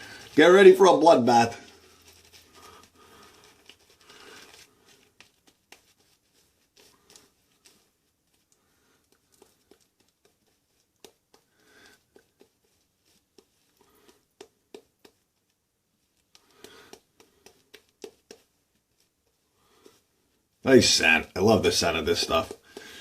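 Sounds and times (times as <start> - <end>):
shaving brush swishing lather: 0.0 - 23.0
small taps of handling: 4.4 - 15.5, 16.2 - 20.0.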